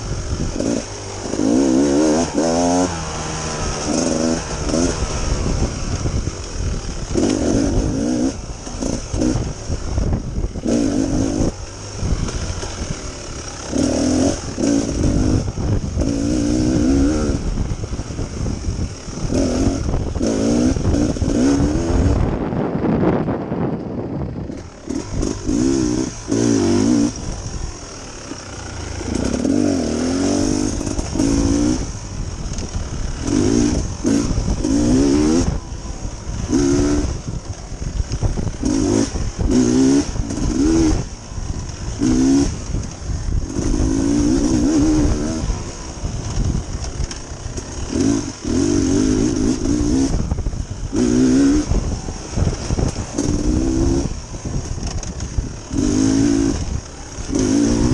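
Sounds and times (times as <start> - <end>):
dirt bike engine revving: 0.0 - 57.9.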